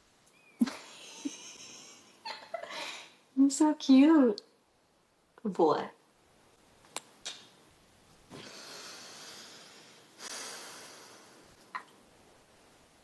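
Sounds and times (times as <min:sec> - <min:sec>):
breathy exhales: 0:08.3 - 0:11.6.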